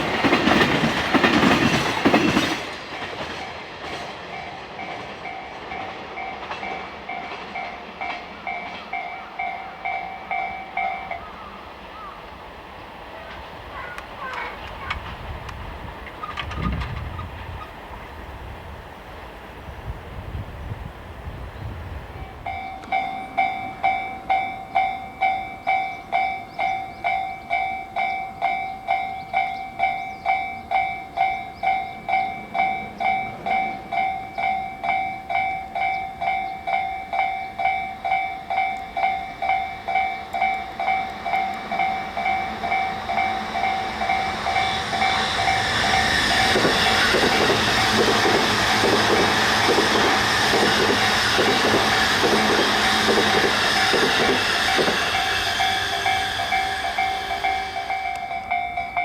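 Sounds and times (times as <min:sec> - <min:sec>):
approaching train: 0:00.0 - 0:59.0
level crossing bell ringing: 0:22.5 - 0:46.2, 0:54.6 - 0:59.0.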